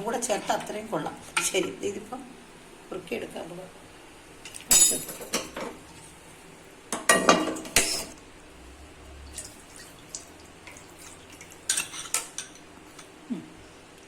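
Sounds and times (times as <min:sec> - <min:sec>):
pan and utensils clattering: 0:04.5 - 0:05.8, 0:07.0 - 0:08.2, 0:10.7 - 0:13.1.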